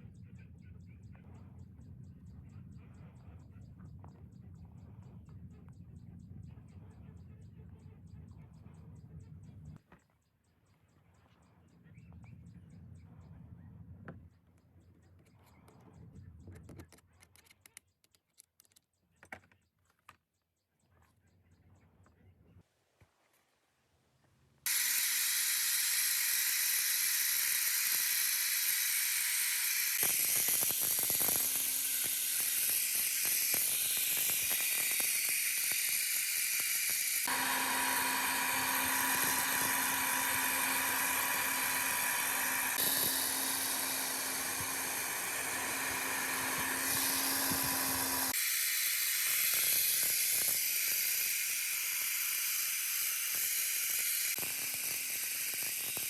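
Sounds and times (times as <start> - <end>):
high-speed power tool whirring: 24.7 - 56.0.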